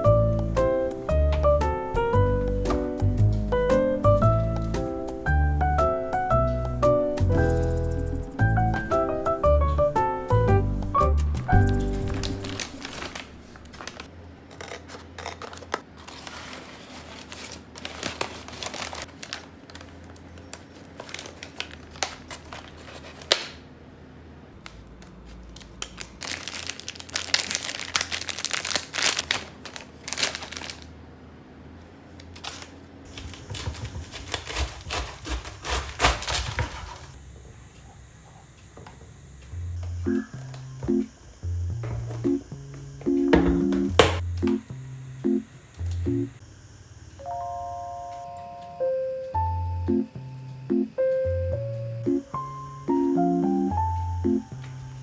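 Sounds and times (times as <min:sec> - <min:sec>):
plastic packaging crinkling: 0:11.6 - 0:23.6, 0:25.6 - 0:31.0, 0:32.2 - 0:37.2.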